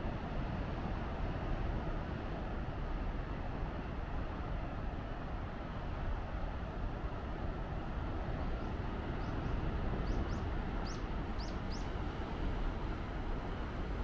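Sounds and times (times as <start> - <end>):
bird chirping: 10.1 - 11.9.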